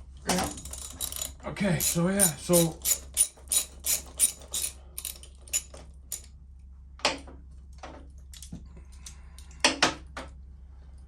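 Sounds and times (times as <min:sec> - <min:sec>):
hand tools clicking and clinking: 0:00.3 - 0:06.3.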